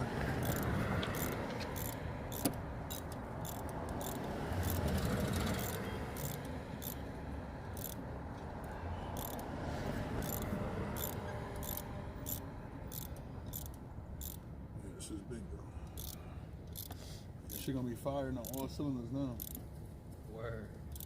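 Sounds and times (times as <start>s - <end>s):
hand ratchet clicking: 0.4s - 7.1s, 7.7s - 9.5s, 10.2s - 14.5s, 15.8s - 19.7s.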